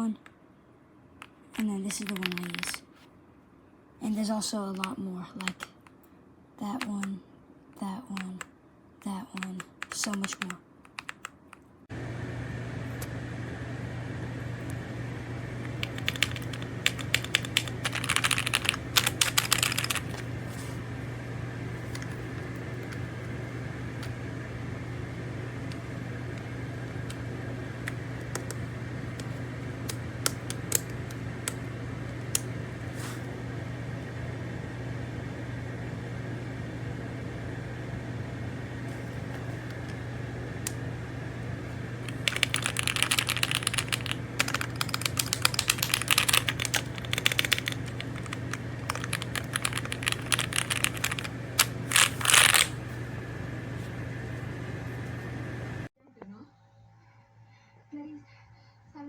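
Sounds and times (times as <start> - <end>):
steady low hum: 0.0 - 59.0
mechanical keyboard keys clacking: 1.6 - 2.8, 9.4 - 11.4, 15.7 - 20.2, 42.1 - 52.7.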